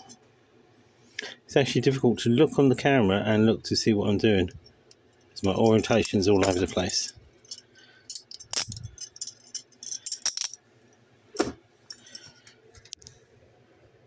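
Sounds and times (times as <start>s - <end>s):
metal handcuffs clinking: 5.4s - 10.6s, 11.9s - 12.4s.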